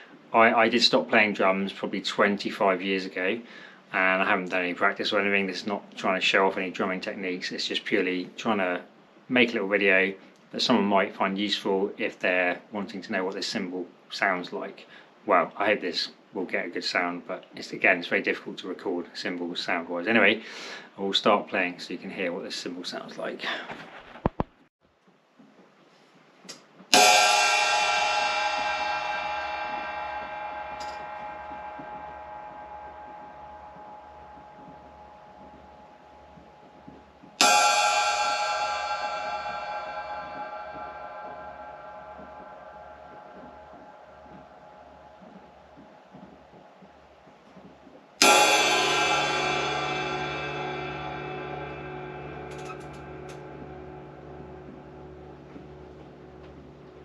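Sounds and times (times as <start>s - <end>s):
ride cymbal struck and ringing: 26.9s - 47.4s, 48.2s - 57.0s.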